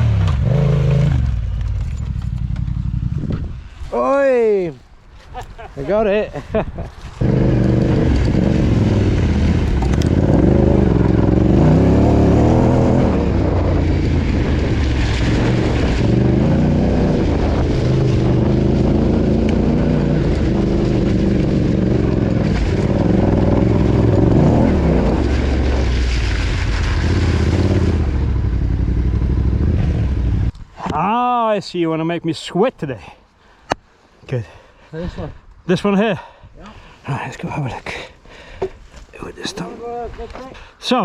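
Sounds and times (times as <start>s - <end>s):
motorcycle engine revving: 0.0s - 3.6s, 7.2s - 30.5s.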